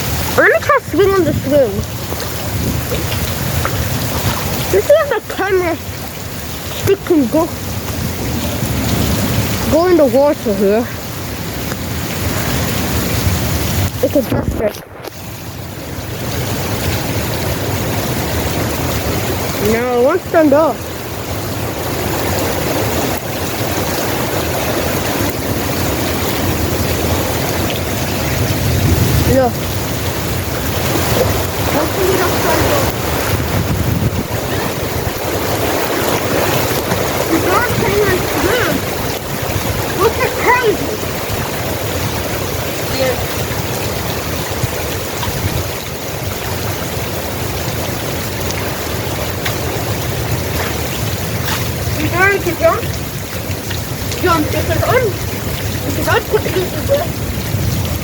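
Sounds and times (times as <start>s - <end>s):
heavy rain rushing: 0.0s - 58.0s
low rumble on microphone: 20.9s - 40.0s.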